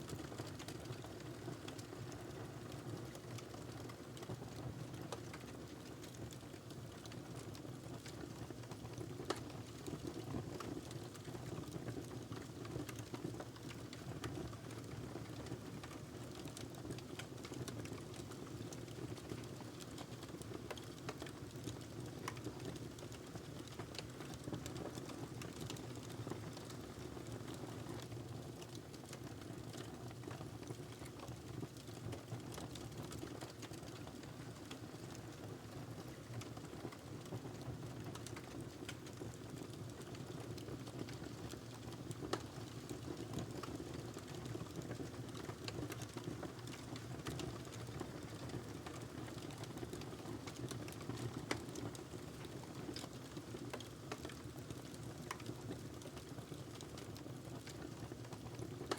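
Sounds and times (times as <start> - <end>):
wood fire crackling: 28.0 - 37.3, 38.0 - 58.9.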